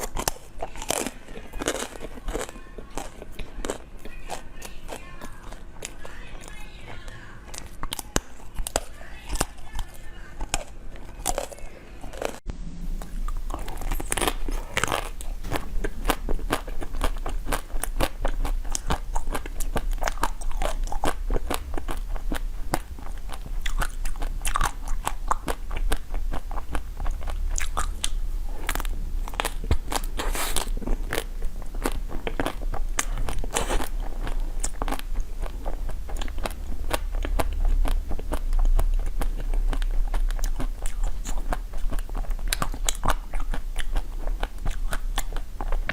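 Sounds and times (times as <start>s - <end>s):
crunchy chewing of crisp food: 0.0s - 12.4s, 13.0s - 45.9s
low hum: 10.4s - 42.8s.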